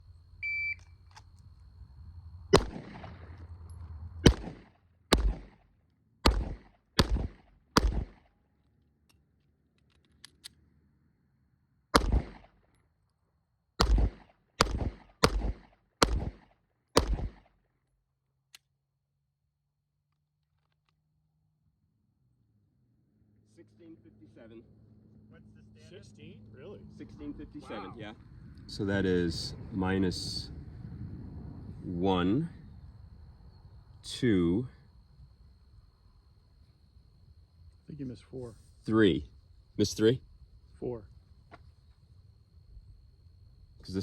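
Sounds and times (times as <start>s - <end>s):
shot timer beep: 0.4s - 1.1s
pistol shots: 2.5s - 3.6s, 4.2s - 8.3s, 11.9s - 12.6s, 13.8s - 17.5s.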